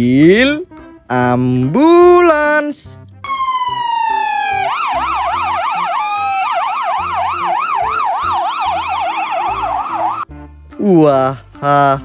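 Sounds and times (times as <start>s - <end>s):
ambulance siren wailing: 3.2s - 10.3s.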